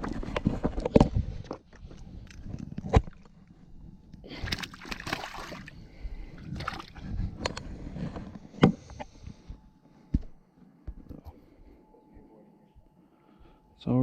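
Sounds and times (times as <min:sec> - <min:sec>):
water splashing and sloshing: 0:04.2 - 0:07.3.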